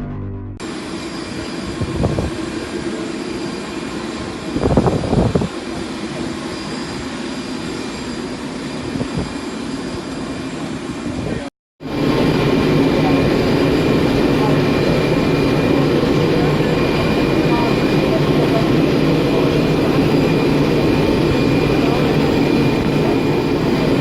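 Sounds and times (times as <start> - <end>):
jet engines rushing: 11.8 - 24.0.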